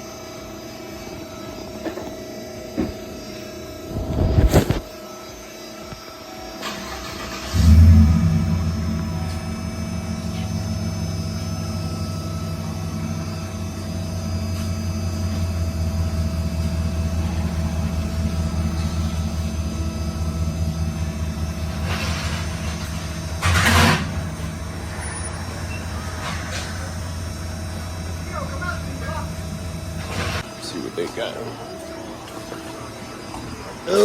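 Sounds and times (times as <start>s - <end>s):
car engine idling: 6.6s - 30.5s.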